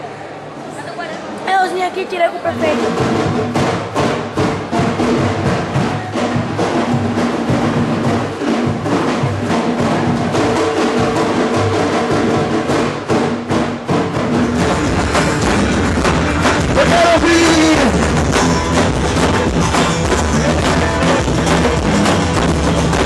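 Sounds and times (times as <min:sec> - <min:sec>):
drums: 0:01.8 - 0:23.0
woodblock-like strikes: 0:02.7 - 0:23.0.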